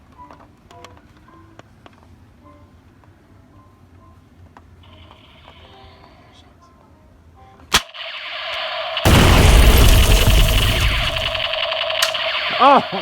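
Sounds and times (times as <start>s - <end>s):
toy machine-gun sound effect: 7.8s - 13.0s.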